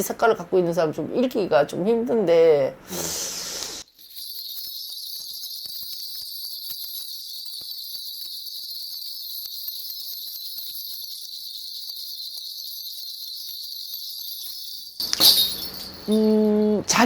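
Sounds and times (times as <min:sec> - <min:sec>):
small metal bells jingling: 0:03.8 - 0:17.0.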